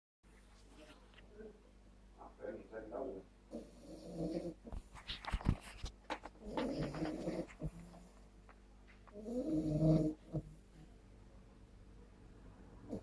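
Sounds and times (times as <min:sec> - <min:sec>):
puppy snoring: 0:03.5 - 0:05.0, 0:06.3 - 0:08.3, 0:09.1 - 0:10.9.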